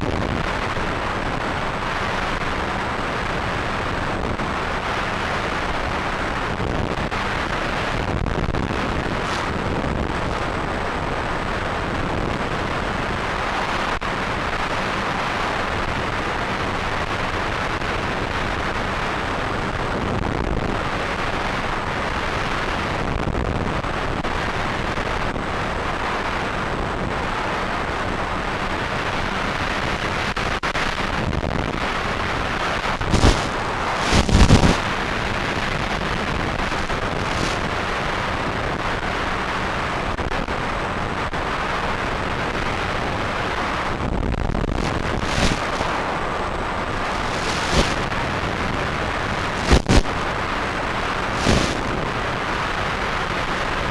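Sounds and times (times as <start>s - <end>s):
loud microphone buffets: 0.0s - 15.1s, 28.5s - 53.9s
rushing wind noise: 0.0s - 53.9s.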